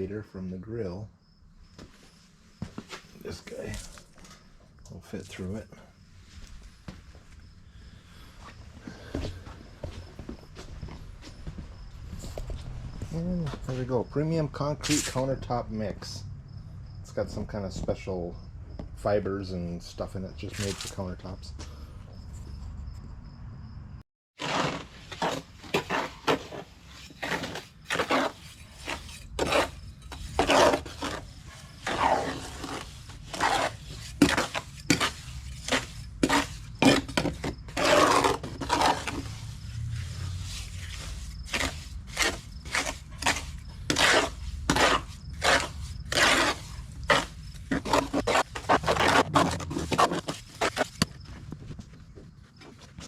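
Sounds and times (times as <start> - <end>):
tool scraping wet concrete: 2.8 - 5.7, 13.1 - 16.2, 19.4 - 21.4, 24.4 - 51.8.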